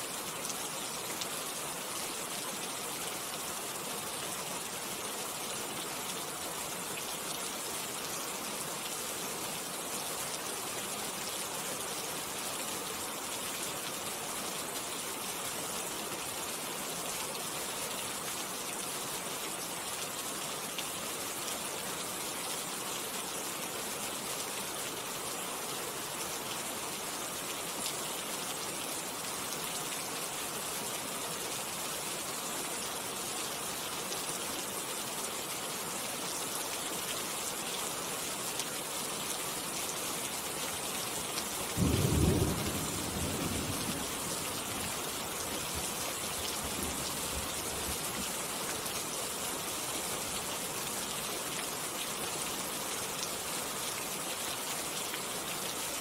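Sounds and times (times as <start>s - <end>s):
steady rain falling: 0.0s - 56.0s
low rumble of thunder: 41.8s - 44.2s.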